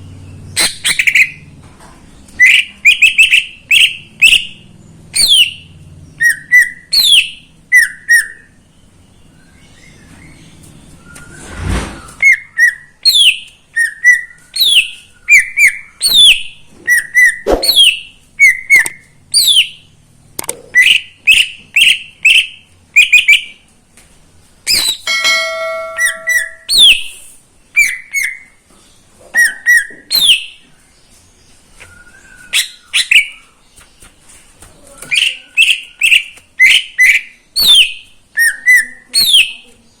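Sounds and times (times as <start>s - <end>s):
bird singing whistled notes: 6.2s - 19.8s, 25.7s - 27.1s, 31.8s - 33.6s, 35.0s - 39.6s.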